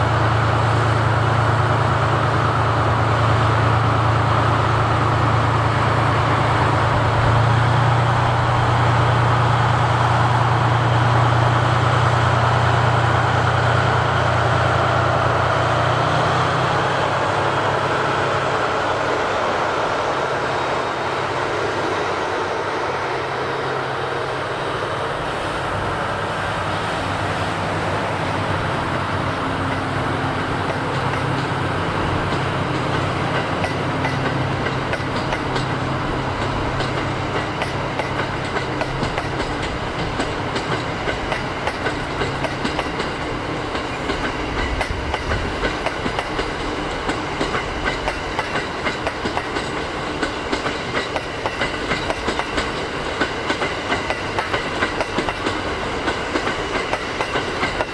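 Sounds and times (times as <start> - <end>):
diesel train engine drone: 0.0 - 57.9
train wheels clattering over rail joints: 27.6 - 57.9.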